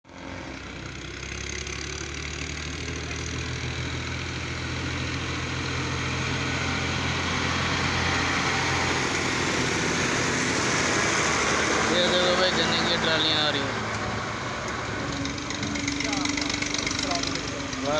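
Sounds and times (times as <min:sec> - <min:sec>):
tractor engine humming: 0:00.0 - 0:17.9.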